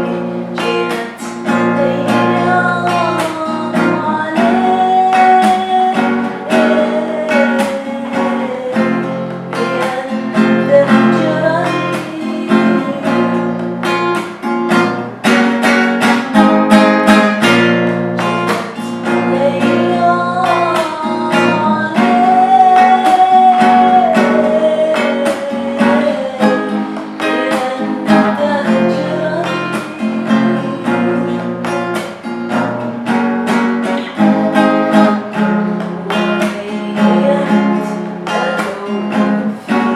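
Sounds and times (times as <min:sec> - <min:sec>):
acoustic guitar strumming: 0:00.0 - 0:39.9
woman singing slow song: 0:00.0 - 0:39.9.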